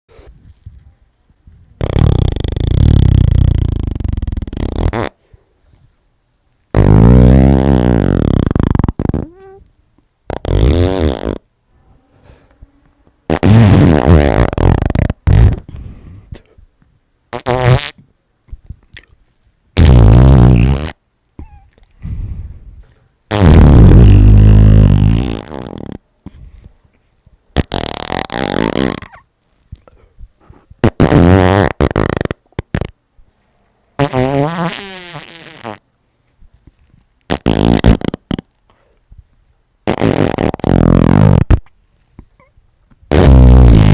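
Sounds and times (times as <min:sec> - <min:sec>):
fart sounds: 0:01.8 - 0:05.2, 0:06.7 - 0:09.6, 0:10.2 - 0:11.5, 0:13.3 - 0:15.7, 0:17.3 - 0:18.1, 0:19.8 - 0:21.6, 0:23.3 - 0:26.4, 0:27.6 - 0:29.3, 0:30.8 - 0:33.0, 0:34.0 - 0:35.9, 0:37.3 - 0:38.6, 0:39.8 - 0:41.7, 0:43.1 - 0:43.9.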